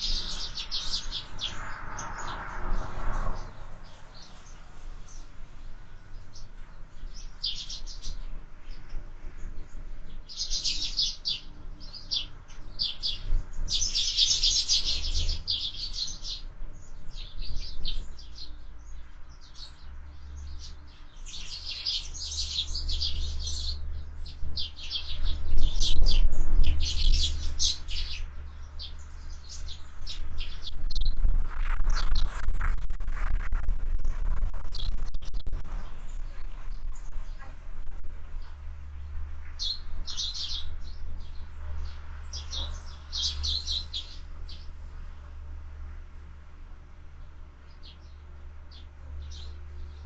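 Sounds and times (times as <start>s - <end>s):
sparrows chirping: 0.0s - 50.0s
wind buffeting microphone: 21.6s - 44.6s.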